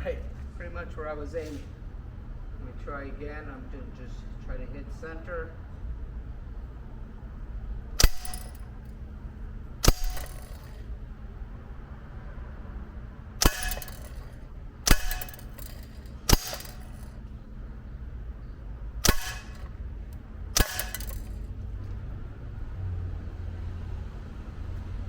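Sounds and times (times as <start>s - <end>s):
bb gun shots: 8.0s - 8.6s, 9.8s - 10.8s, 13.4s - 17.2s, 19.0s - 19.8s, 20.5s - 21.4s
metallic ring of bb strikes: 8.0s - 8.7s, 9.8s - 10.8s, 13.4s - 17.1s, 19.0s - 19.7s, 20.6s - 21.4s.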